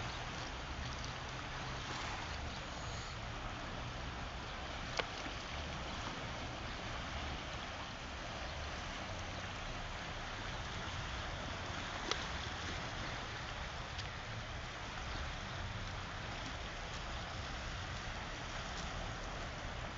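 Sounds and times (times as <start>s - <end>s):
sea water washing: 0.0s - 19.9s.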